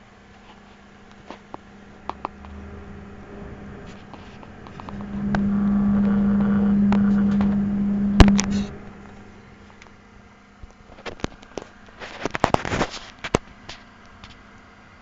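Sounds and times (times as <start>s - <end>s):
computer electrical buzz: 1.8s - 9.8s.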